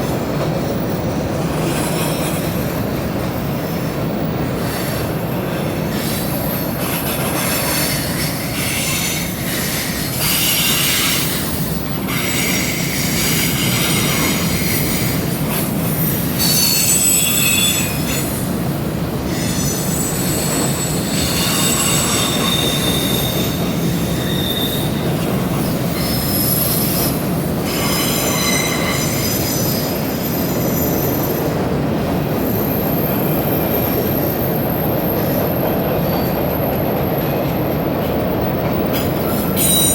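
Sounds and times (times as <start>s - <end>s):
train rumbling over bridge: 0.0s - 39.9s
high-pitched wheel squeal: 15.9s - 18.3s, 19.3s - 31.4s, 39.6s - 39.9s.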